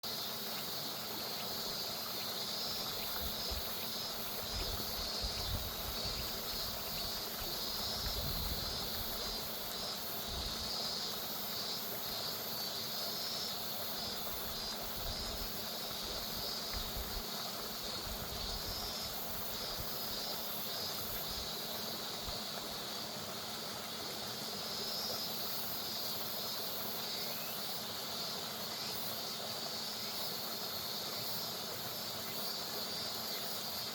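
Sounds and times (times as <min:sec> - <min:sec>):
cicadas buzzing: 0:00.0 - 0:33.9
river water flowing: 0:00.0 - 0:33.9.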